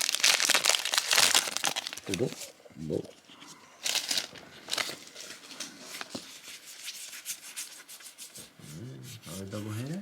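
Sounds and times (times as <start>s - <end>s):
foil wrapper crinkling and tearing: 0.0s - 2.5s, 3.8s - 6.2s.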